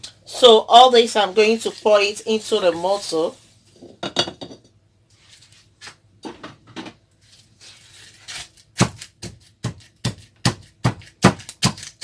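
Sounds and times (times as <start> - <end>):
pestle pounding thumps: 8.8 - 12.0.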